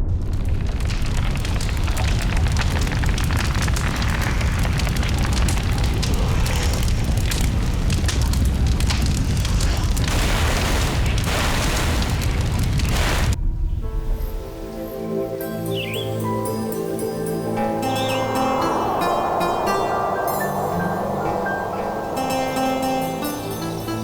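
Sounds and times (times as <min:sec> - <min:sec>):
deep volcanic rumble with crackling: 0:00.0 - 0:14.7.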